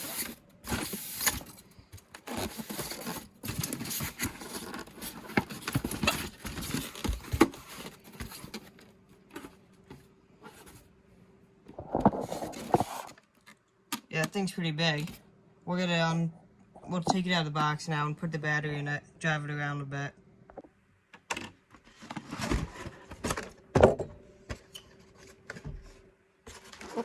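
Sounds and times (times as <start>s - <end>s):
faint steady hum: 0.0s - 26.9s
cardboard box scraping and knocking: 11.7s - 13.1s.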